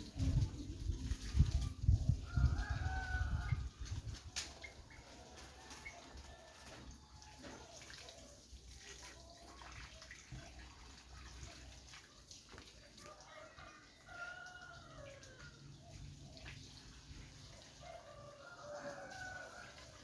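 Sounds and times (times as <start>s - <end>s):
faint outdoor ambience: 0.0s - 20.0s
distant rooster crowing: 2.2s - 3.6s, 13.1s - 15.7s, 17.8s - 20.0s.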